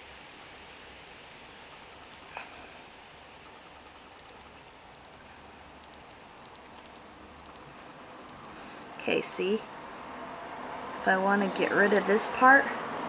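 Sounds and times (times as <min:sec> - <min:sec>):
high-pitched electronic beeps: 0:01.8 - 0:02.3, 0:04.2 - 0:04.4, 0:05.0 - 0:05.2, 0:05.8 - 0:08.6.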